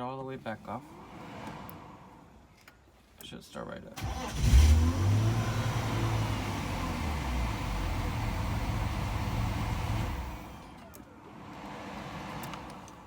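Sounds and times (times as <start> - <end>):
car engine running: 4.0 - 11.4
engine shutting off: 4.0 - 13.0.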